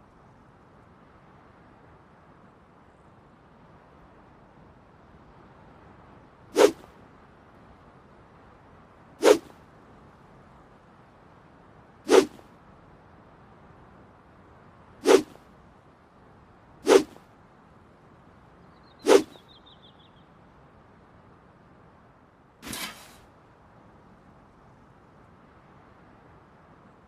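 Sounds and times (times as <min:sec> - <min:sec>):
sword swishing through air: 0:06.6 - 0:06.9, 0:09.2 - 0:09.5, 0:12.1 - 0:12.4, 0:15.0 - 0:15.4, 0:16.8 - 0:17.2, 0:19.1 - 0:19.4, 0:22.6 - 0:23.2.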